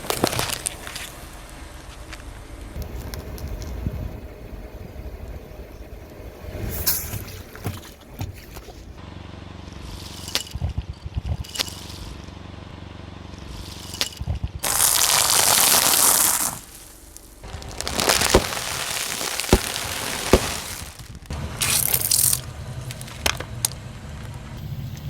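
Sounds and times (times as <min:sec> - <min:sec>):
tyre crushing objects: 0:00.0 - 0:01.3, 0:13.4 - 0:24.4
car engine idling: 0:00.0 - 0:25.0.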